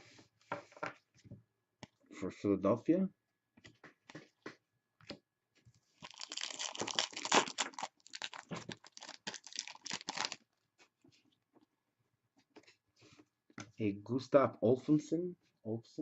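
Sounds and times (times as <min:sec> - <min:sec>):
foil wrapper crinkling and tearing: 0:06.0 - 0:10.4.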